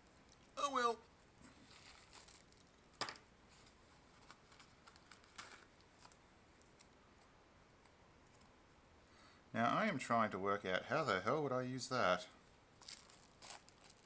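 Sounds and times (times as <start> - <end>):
packaging clicks and rustles: 1.7 - 7.0, 12.8 - 14.0.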